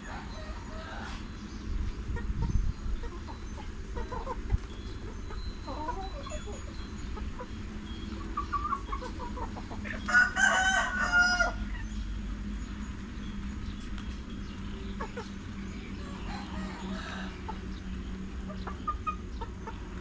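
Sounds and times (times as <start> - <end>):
rooster crowing: 0.0 - 1.3, 10.0 - 11.7, 16.0 - 17.7
chickens clucking: 0.0 - 20.0.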